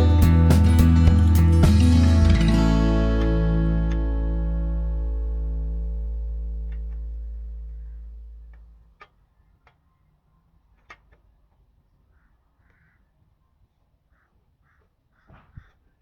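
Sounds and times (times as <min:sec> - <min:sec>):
guitar background music: 0:00.0 - 0:08.6.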